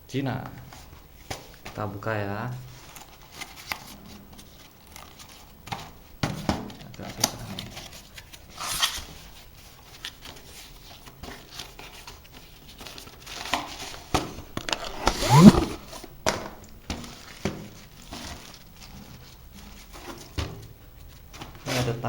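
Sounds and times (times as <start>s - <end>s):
short rising squeak: 14.9s - 15.8s.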